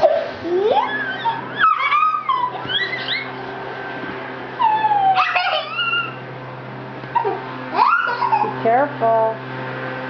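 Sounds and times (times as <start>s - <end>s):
high-pitched squeals and whimpers: 0.0s - 3.5s, 4.6s - 6.3s, 7.1s - 8.6s
steady low hum: 0.0s - 10.0s.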